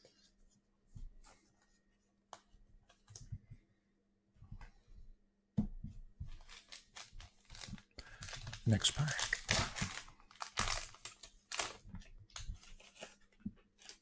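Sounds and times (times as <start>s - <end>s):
trading cards clicking and rustling: 6.4s - 11.8s.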